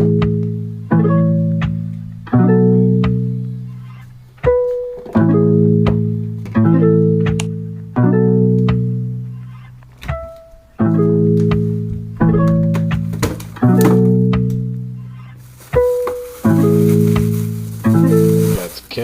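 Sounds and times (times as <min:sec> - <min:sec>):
plucked string chords: 0:00.0 - 0:18.6.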